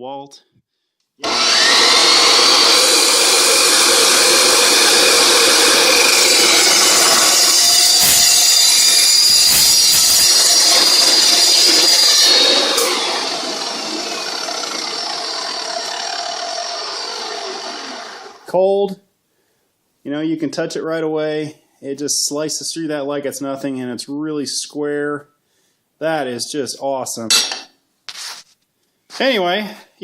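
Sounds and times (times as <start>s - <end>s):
chop saw cutting metal: 1.2s - 18.5s.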